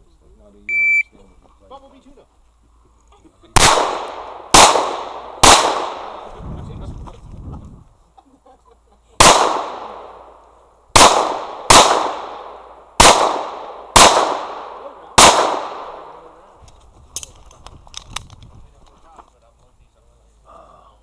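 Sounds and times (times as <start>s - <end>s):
pistol shots with echo: 3.6s - 6.4s, 9.2s - 17.4s.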